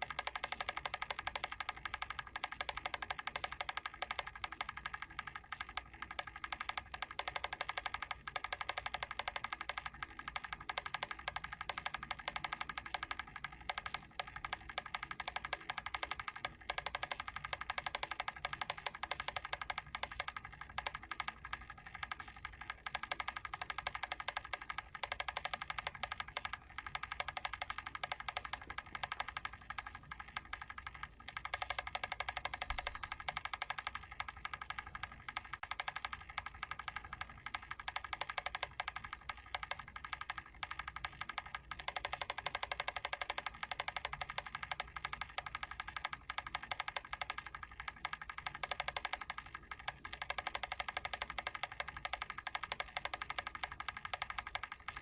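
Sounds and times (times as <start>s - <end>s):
timer switch ticking: 22.0s - 55.0s.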